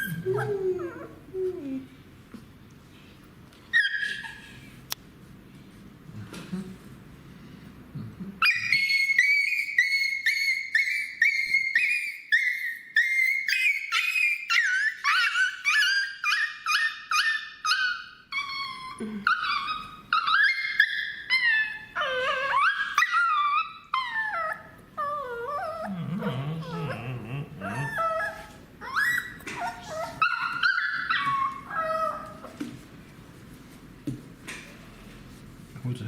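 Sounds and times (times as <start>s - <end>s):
puppy whimpering and yelping: 0.0s - 1.8s, 3.7s - 4.7s, 8.4s - 32.6s.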